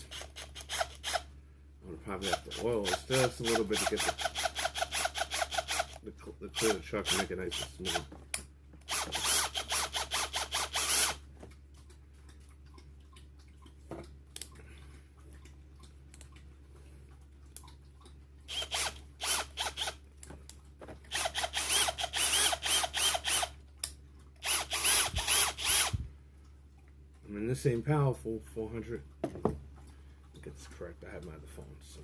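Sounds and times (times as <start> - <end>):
drill chuck ratcheting clicks: 0.0 - 1.3, 2.2 - 6.0, 6.6 - 8.1, 8.8 - 11.2, 18.5 - 20.0, 21.1 - 23.6, 24.4 - 26.0.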